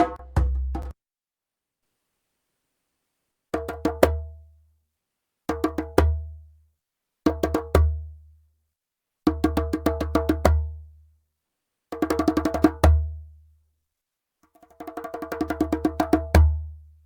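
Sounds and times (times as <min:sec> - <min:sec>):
djembe played by hand: 0:00.0 - 0:00.9, 0:03.6 - 0:04.3, 0:05.5 - 0:06.3, 0:07.3 - 0:08.0, 0:09.3 - 0:10.7, 0:12.0 - 0:13.2, 0:14.7 - 0:16.7.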